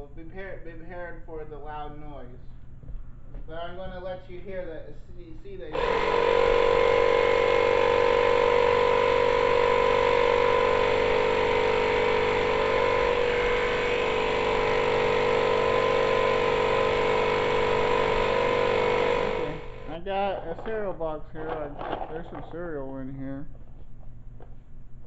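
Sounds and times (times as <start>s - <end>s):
air compressor running: 5.4s - 22.7s.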